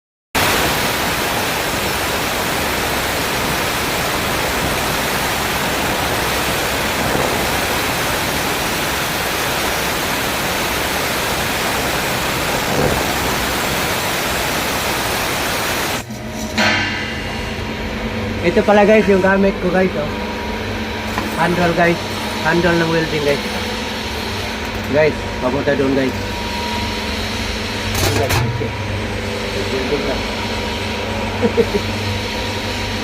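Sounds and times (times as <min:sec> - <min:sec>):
welding arc hissing: 0:00.4 - 0:16.2, 0:21.0 - 0:28.0.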